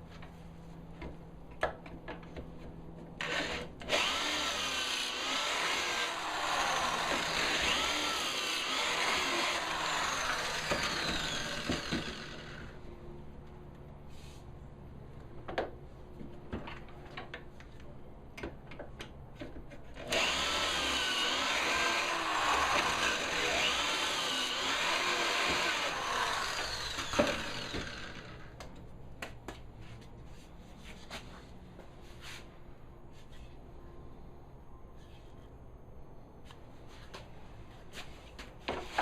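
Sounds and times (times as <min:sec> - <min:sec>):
power drill running: 0:03.2 - 0:12.8, 0:20.0 - 0:28.5.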